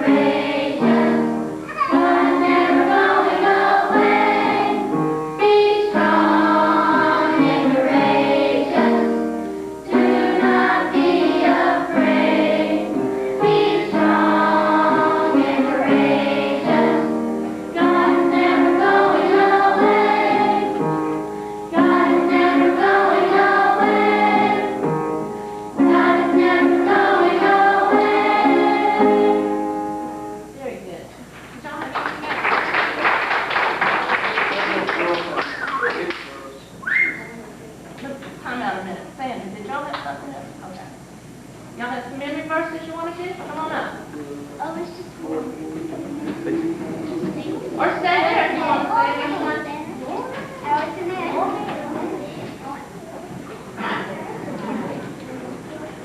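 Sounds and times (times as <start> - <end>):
children singing in unison: 0.0 - 21.0, 21.7 - 25.0, 25.7 - 29.7, 45.1 - 49.7.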